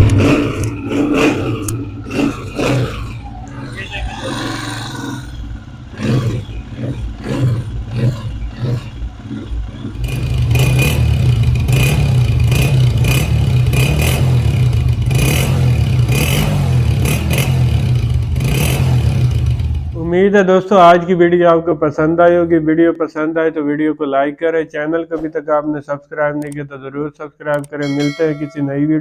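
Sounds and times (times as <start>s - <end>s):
motorcycle engine running: 0.0s - 20.4s.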